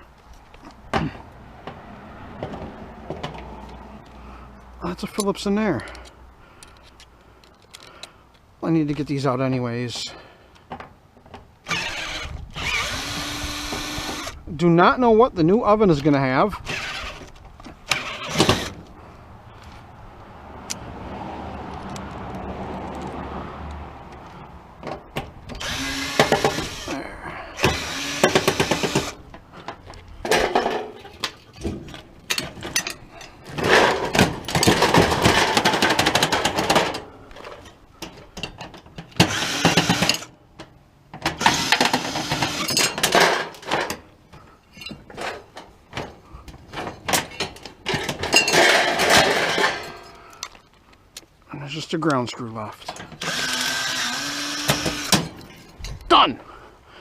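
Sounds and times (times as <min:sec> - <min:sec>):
cordless drill bursts: 0:11.7 - 0:14.4, 0:16.7 - 0:17.2, 0:17.9 - 0:18.8, 0:25.6 - 0:26.9, 0:27.6 - 0:29.2, 0:39.2 - 0:40.3, 0:41.4 - 0:42.8, 0:53.2 - 0:55.2.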